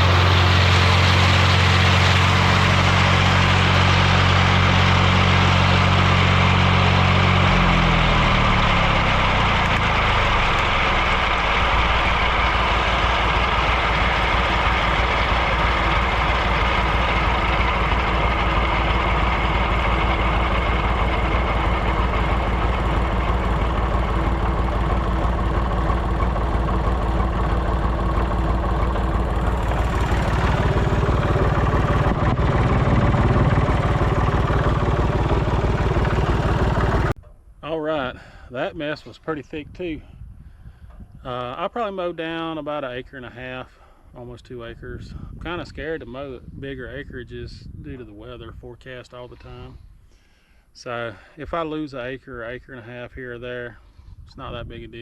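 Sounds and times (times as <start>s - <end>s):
tractor engine running: 0.0s - 37.2s.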